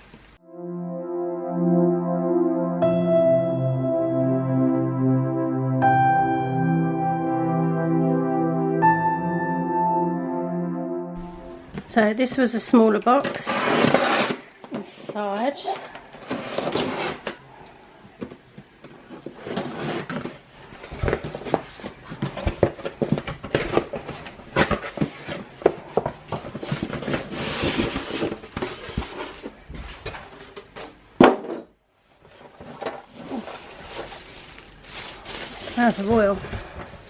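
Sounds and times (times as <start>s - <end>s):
rustling: 15.7s - 31.0s, 32.0s - 37.0s
cardboard box contents clattering: 19.2s - 30.3s, 32.3s - 37.0s.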